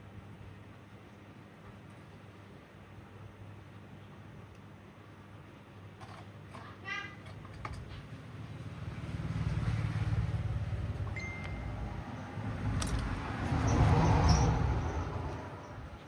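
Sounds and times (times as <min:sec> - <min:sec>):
passing vehicle engine rumble: 0:08.1 - 0:16.0.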